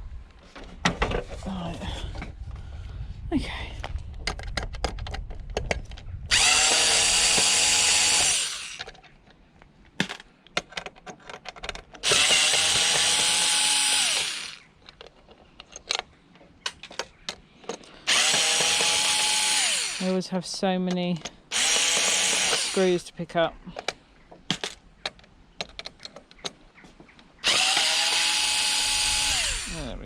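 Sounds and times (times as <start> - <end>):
small clicks and knocks of parts: 3.8 - 6.1, 8.2 - 13.4, 14.2 - 19.3, 23.7 - 28.3
cordless drill backing out screws: 6.3 - 9.0, 11.6 - 15.1, 17.7 - 20.1, 21.2 - 22.9, 27.4 - 29.8.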